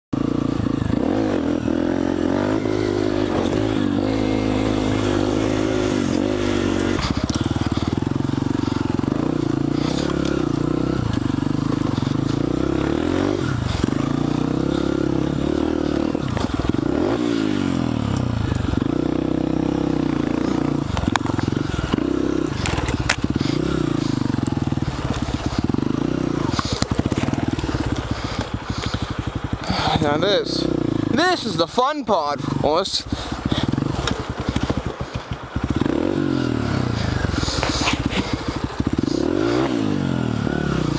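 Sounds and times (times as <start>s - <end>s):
dirt bike engine revving: 0.2s - 40.9s
sharp clicks and crackles: 22.6s - 23.4s.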